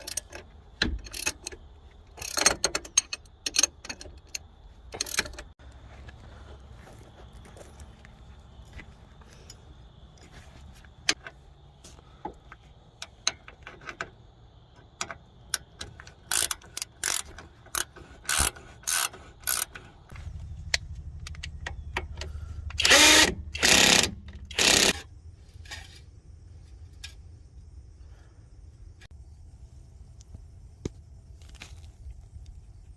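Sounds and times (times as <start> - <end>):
ratchet wrench ratcheting: 2.2 - 5.4, 15.6 - 19.8, 22.7 - 25.1.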